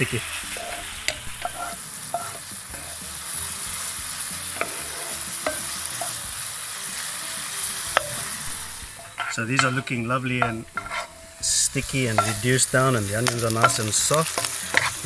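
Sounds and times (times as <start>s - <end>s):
onions sizzling in a frying pan: 0.0s - 15.0s
utensil clicking against pan: 4.6s - 6.2s, 11.8s - 15.0s.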